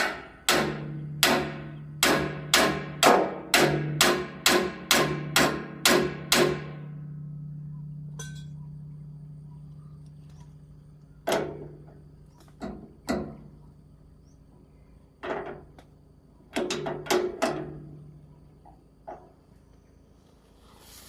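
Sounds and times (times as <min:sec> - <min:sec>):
knocks on steel ringing: 0:00.0 - 0:08.6.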